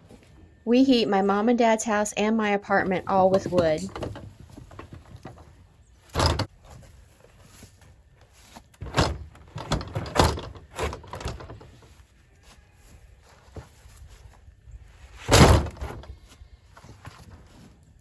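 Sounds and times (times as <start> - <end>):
firewood logs thunking and knocking: 2.9 - 12.0, 15.2 - 16.1.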